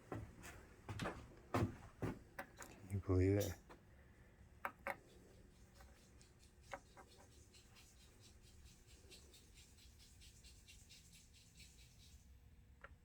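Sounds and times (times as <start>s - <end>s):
faint rhythmic scratching: 5.0s - 12.4s.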